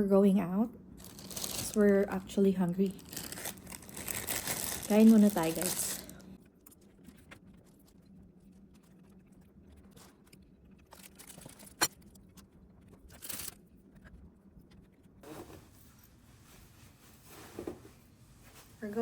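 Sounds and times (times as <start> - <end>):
person eating: 3.0 - 6.3.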